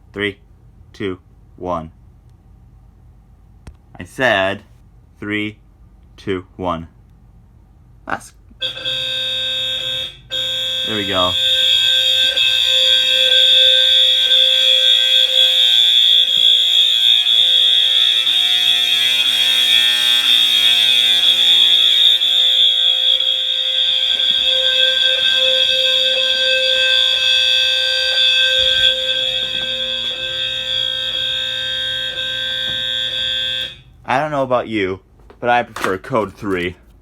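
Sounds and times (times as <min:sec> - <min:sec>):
piercing high electronic tone: 0:08.6 - 0:33.9
coarse buzz of alarm horn: 0:08.6 - 0:34.0.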